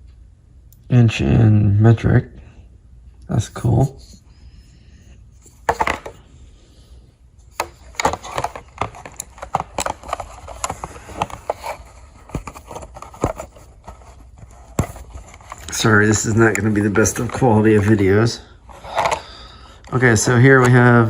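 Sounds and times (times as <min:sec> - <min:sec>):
multi-tool clicking and knocking: 0:07.6 - 0:15.7.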